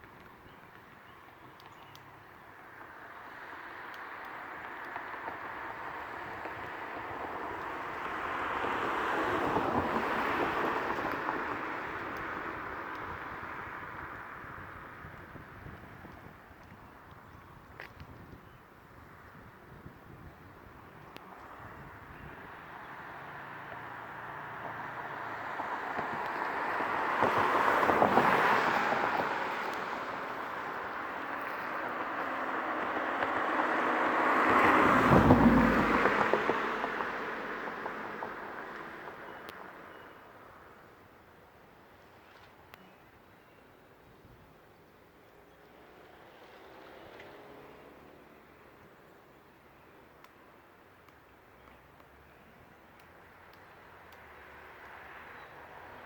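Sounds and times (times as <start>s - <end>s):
vehicle passing by: 21.6s - 39.3s, 45.7s - 48.8s
outdoor rushing noise: 22.0s - 39.7s.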